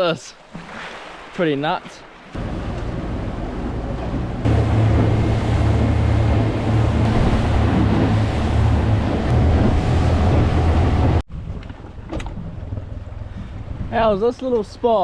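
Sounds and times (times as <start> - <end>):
water noise: 0.0 - 15.0
outboard motor drone: 2.4 - 11.2
wind noise: 2.4 - 14.2.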